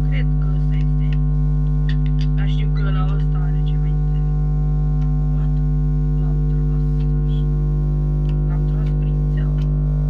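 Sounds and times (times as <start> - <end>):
electrical mains buzz: 0.0 - 10.0.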